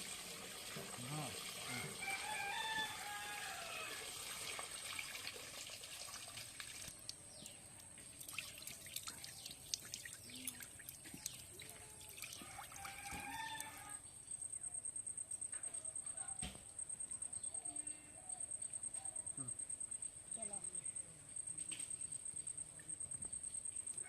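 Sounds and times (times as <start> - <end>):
water dripping: 0.0 - 13.8
water pouring and trickling: 0.0 - 13.9.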